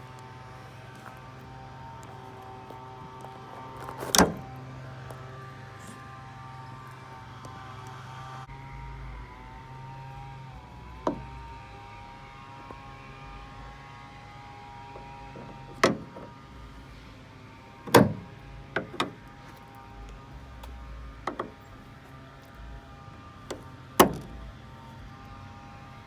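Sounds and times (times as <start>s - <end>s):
sharp clicks and knocks: 17.9s - 19.2s, 20.6s - 21.6s.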